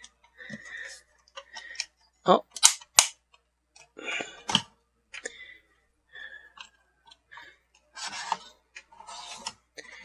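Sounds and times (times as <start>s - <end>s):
plastic parts clicking: 1.3s - 3.2s.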